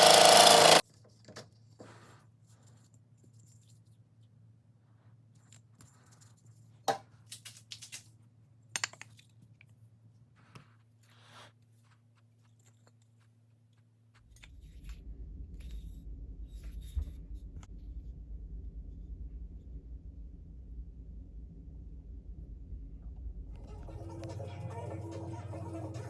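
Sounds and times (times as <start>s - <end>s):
machine rattly rumble: 0.0s - 0.8s.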